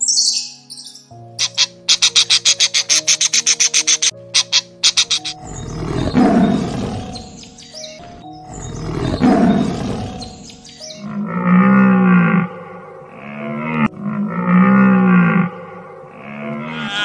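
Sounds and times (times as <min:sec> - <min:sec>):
background music: 0:00.0 - 0:17.0
drawn-out animal call: 0:01.4 - 0:07.5, 0:16.2 - 0:17.0
large animal roaring: 0:05.4 - 0:07.4, 0:08.6 - 0:17.0.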